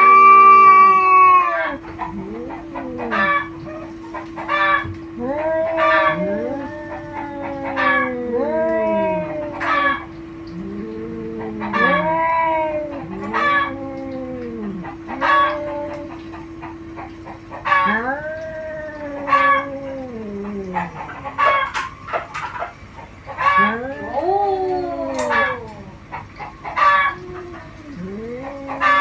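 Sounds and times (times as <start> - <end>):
cats yowling in a fight: 0.0 - 22.3, 23.4 - 29.0.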